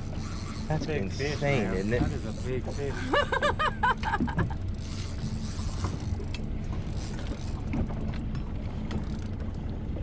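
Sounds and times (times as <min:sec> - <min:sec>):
boat motor idling: 0:00.0 - 0:10.0.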